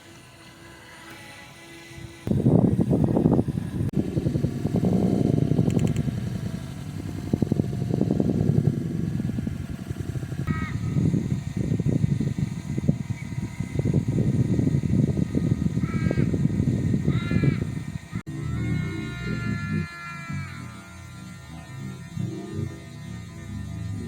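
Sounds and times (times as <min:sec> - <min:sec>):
bird cawing: 0:10.4 - 0:11.1, 0:15.4 - 0:21.2.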